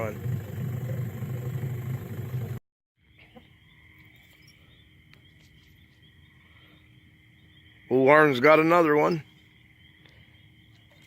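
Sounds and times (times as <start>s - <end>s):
low steady rumble: 0.0s - 2.6s
night insects or frogs calling: 0.0s - 11.0s.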